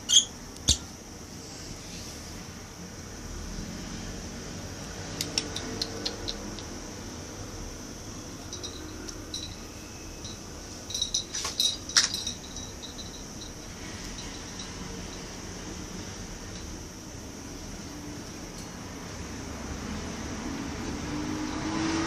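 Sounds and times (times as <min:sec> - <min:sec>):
bird clicks: 0:05.2 - 0:06.7.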